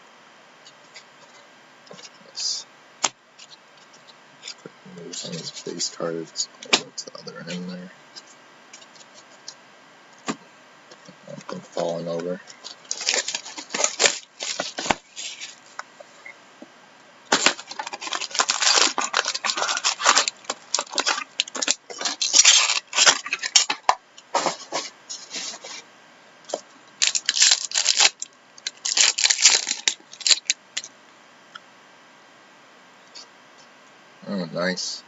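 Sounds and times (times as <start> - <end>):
trading cards sliding and rustling: 11.4 - 15.8.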